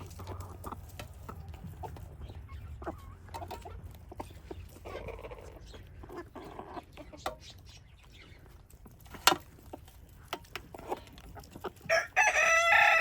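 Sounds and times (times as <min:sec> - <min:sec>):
chickens clucking softly: 0:00.0 - 0:08.6.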